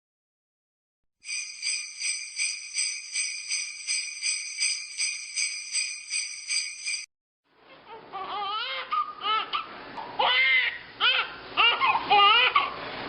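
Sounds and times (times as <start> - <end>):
jingle bells shaken: 1.2 - 7.1.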